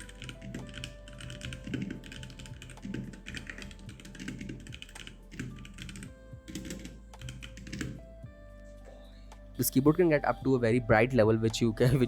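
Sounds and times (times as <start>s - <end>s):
mechanical keyboard typing: 0.0s - 8.0s
chill house background music: 0.0s - 12.0s.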